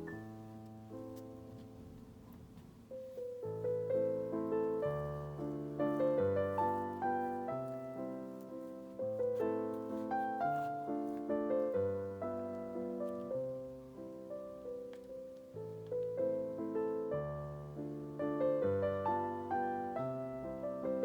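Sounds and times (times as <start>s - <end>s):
gentle piano music: 0.0s - 21.0s.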